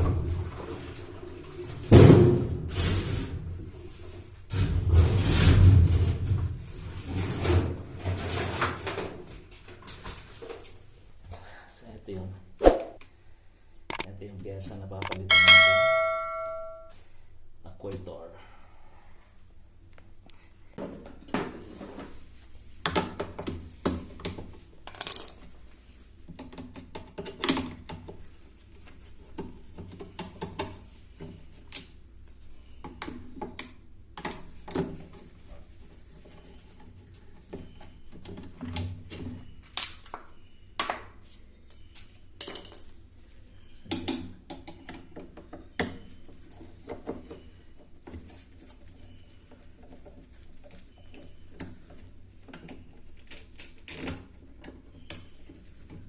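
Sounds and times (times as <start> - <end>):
tools clinking and knocking: 15.0 - 16.9.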